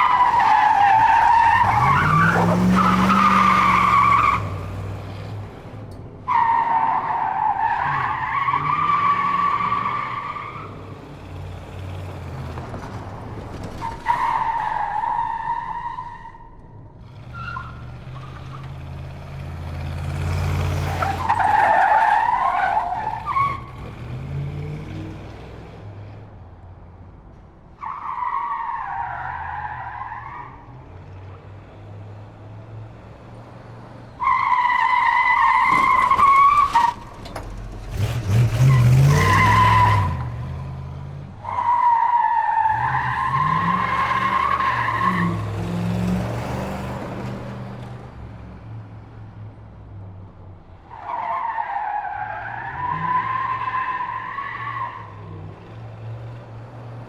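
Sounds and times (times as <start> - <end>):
car engine rumbling: 0.0 - 57.0
tyres squealing: 34.2 - 40.3.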